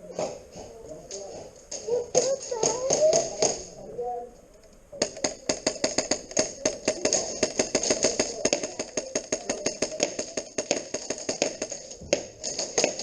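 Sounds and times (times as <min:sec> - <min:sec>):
airsoft guns firing: 0:02.1 - 0:03.7, 0:05.0 - 0:13.0.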